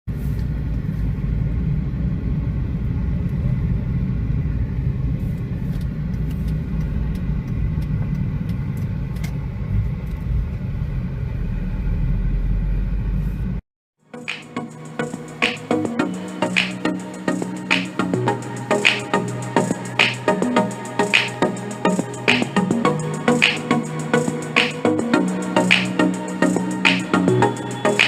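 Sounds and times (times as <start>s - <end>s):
music: 14.0s - 28.0s.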